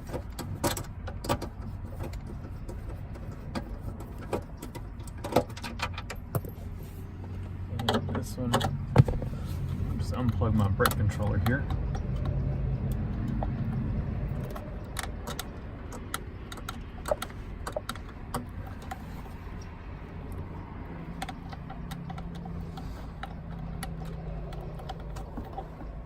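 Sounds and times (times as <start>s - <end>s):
plastic clicks and rattles: 10.0s - 26.0s.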